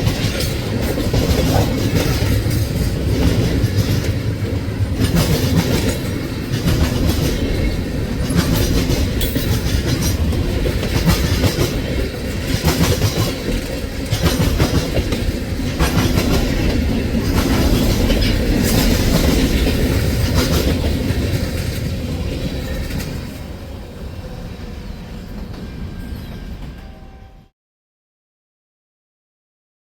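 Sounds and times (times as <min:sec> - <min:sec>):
wheels clicking over rail joints: 0:00.0 - 0:23.4
railroad cars rumbling past: 0:00.0 - 0:27.5.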